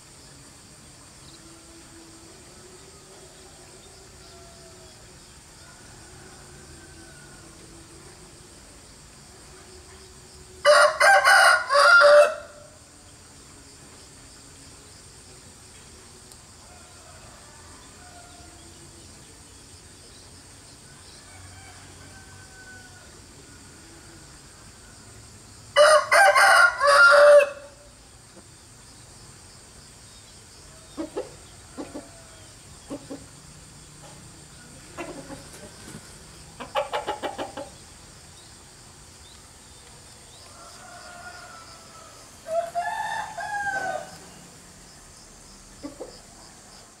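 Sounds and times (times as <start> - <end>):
rooster crowing: 3.2 - 7.7, 10.6 - 12.8, 16.6 - 18.8, 20.9 - 25.0, 25.8 - 27.9, 40.4 - 44.4
chickens clucking: 30.9 - 32.2, 32.8 - 33.4, 34.0 - 37.9, 45.8 - 46.2.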